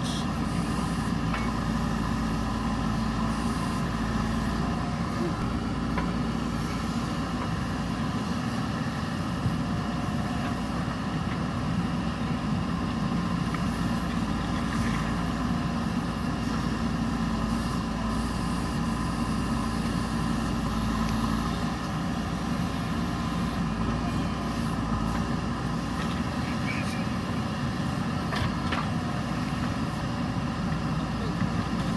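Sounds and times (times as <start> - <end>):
diesel engine running steadily: 0.0 - 31.9.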